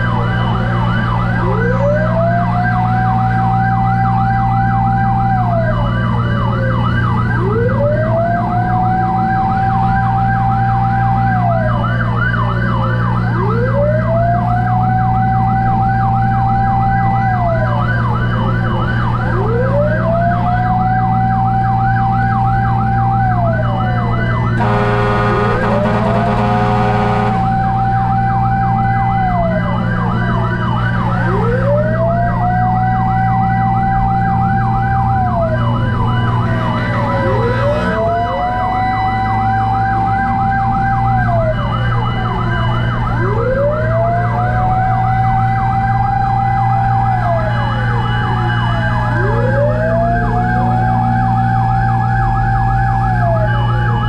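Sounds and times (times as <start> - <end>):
fire truck sirens: 0.0 - 54.0
horn blast: 24.6 - 28.0
engine drone: 24.6 - 28.5.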